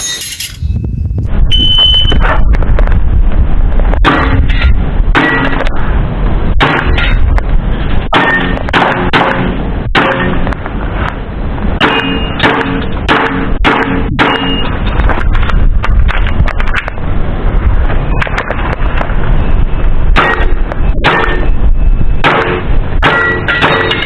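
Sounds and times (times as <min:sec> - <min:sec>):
metal plates ringing when hit: 0:00.0 - 0:00.7, 0:22.3 - 0:24.0
steady low rumble: 0:00.0 - 0:23.1.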